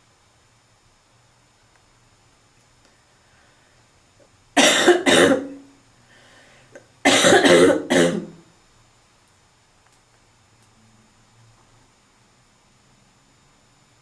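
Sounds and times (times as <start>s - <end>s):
person coughing harshly: 4.6s - 5.6s, 7.0s - 8.4s.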